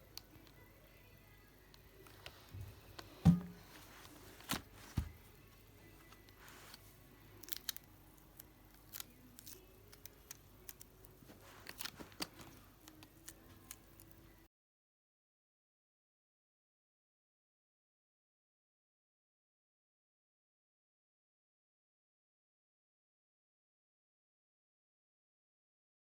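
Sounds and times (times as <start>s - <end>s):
faint background music: 0.0s - 14.5s.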